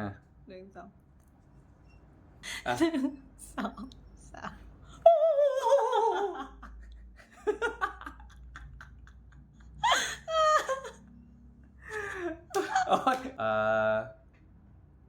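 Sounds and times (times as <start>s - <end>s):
person's wavering cry: 5.0s - 6.5s
person giggling: 5.1s - 11.0s, 11.8s - 13.4s.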